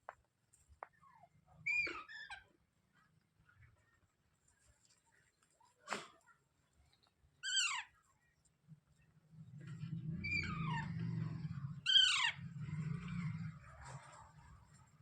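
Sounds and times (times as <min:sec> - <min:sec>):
parrot shrill calls: 0:07.4 - 0:07.9, 0:11.9 - 0:12.4.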